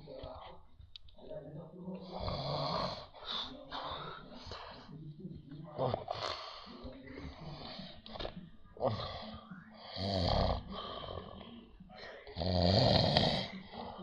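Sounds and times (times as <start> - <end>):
quiet breathing: 0.0 - 14.0
man snoring: 9.9 - 11.4, 12.3 - 14.0.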